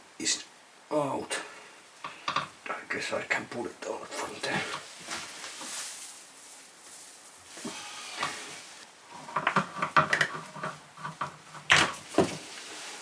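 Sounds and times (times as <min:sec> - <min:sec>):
rustling and scraping handling: 0:04.1 - 0:13.0.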